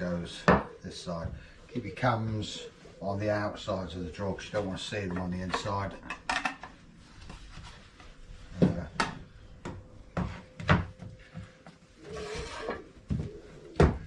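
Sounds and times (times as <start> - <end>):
wooden panel scraping rub: 12.0 - 13.0.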